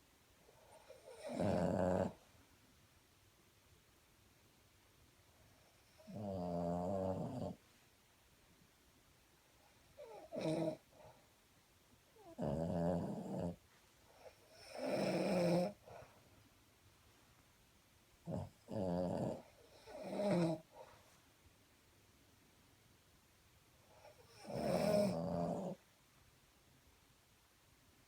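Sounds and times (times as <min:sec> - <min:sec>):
dog snoring: 0:00.6 - 0:02.2, 0:05.6 - 0:07.6, 0:10.0 - 0:10.8, 0:12.2 - 0:13.6, 0:14.2 - 0:16.1, 0:18.2 - 0:20.8, 0:23.9 - 0:25.8
person snoring: 0:00.9 - 0:02.2, 0:24.3 - 0:25.8.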